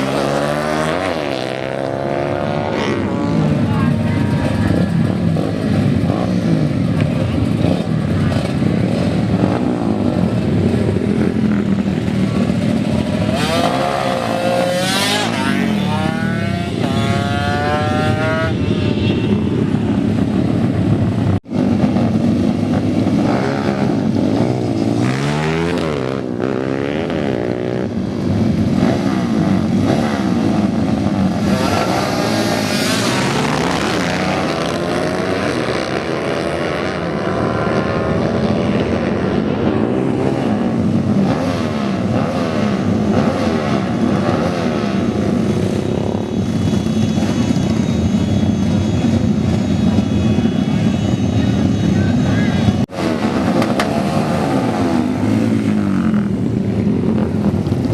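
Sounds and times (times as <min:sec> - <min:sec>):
motorcycle engines revving: 0:00.0 - 0:57.9.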